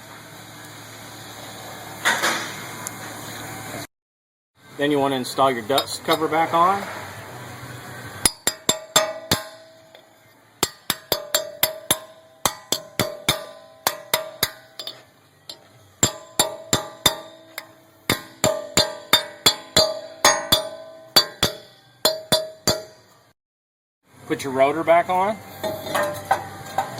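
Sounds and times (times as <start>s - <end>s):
metal tapping on hub cap: 5.7s - 6.6s, 8.2s - 23.1s.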